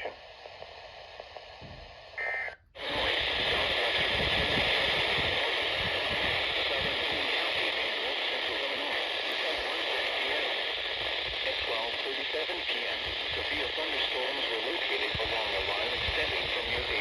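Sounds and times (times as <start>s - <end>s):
radio static: 0.0s - 17.0s.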